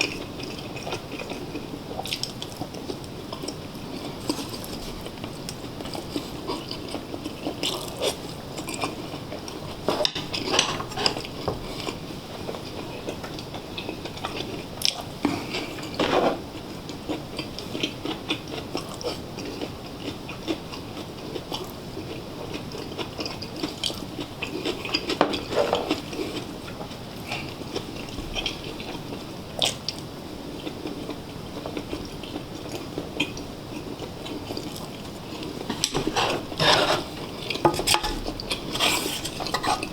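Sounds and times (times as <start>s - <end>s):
man chewing food: 0.0s - 39.9s
utensils clicking against dishes: 9.9s - 11.3s.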